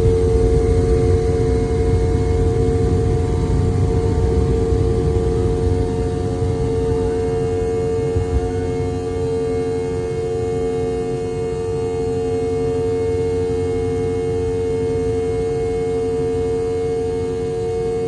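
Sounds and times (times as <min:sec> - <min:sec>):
jet engine whine and rumble: 0:00.0 - 0:18.0.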